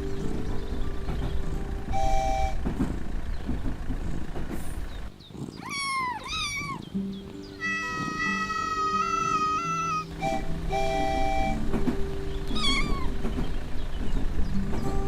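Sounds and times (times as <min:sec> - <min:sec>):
vehicle rumbling: 0:00.0 - 0:15.0
cat meowing: 0:05.4 - 0:06.9, 0:07.6 - 0:10.1, 0:12.5 - 0:13.2.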